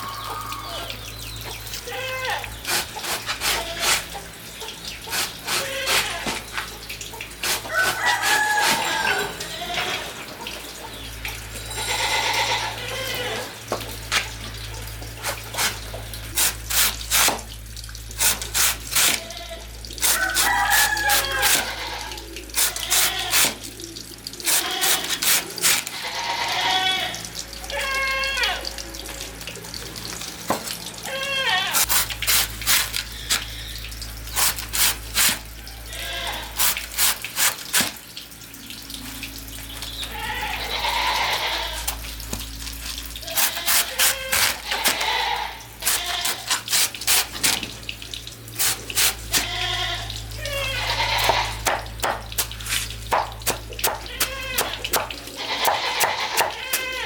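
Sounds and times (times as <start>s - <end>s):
goats bleating: 1.8s - 2.6s, 5.5s - 6.5s, 7.7s - 10.2s, 11.7s - 13.7s, 20.8s - 23.4s, 24.5s - 25.3s, 25.9s - 28.7s, 31.0s - 31.9s, 35.9s - 36.7s, 40.1s - 42.1s, 43.2s - 46.7s, 49.3s - 52.0s, 53.8s - 57.0s.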